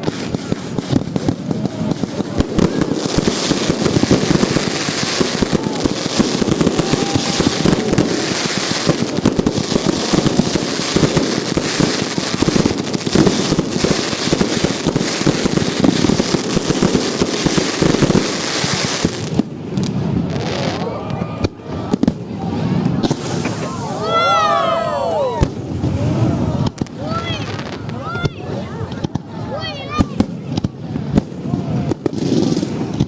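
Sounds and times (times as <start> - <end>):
fireworks crackling: 0.0 - 33.0.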